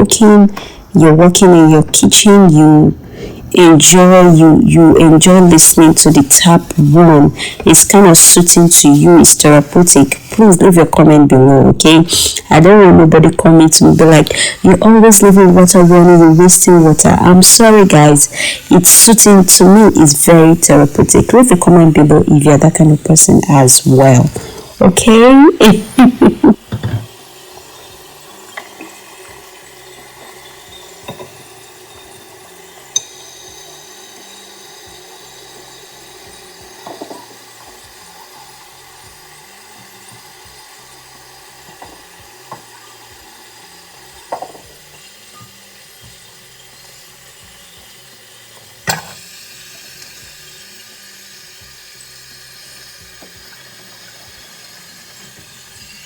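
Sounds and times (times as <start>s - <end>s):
running tap water: 0.0s - 56.0s.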